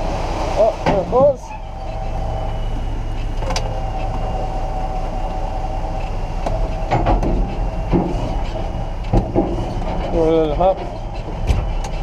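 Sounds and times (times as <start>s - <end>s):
tractor engine running: 0.0s - 12.0s
trailer clunks and knocks: 0.8s - 2.1s, 6.4s - 12.0s.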